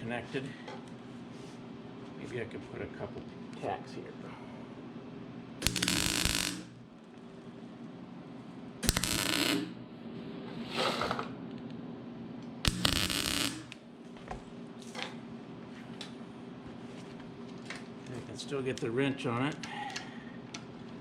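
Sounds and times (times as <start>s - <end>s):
crackling welding arc: 5.6s - 6.8s, 8.8s - 9.8s, 12.7s - 13.8s.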